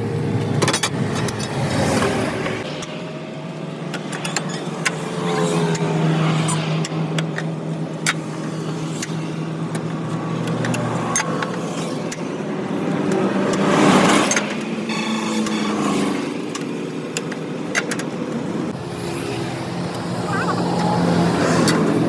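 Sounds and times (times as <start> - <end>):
vehicle engine running: 0.0 - 22.0
rushing whoosh: 18.7 - 22.0.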